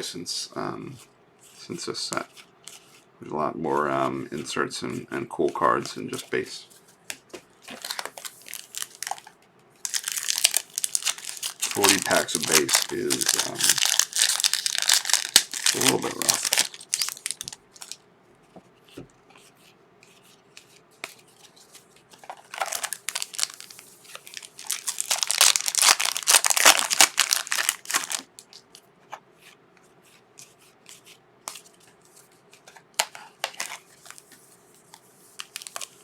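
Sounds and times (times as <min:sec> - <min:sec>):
cards rustling: 0:04.3 - 0:18.0, 0:18.9 - 0:28.8, 0:30.4 - 0:36.0
wrappers tearing and crinkling: 0:07.7 - 0:18.0, 0:22.3 - 0:28.6, 0:35.4 - 0:36.0.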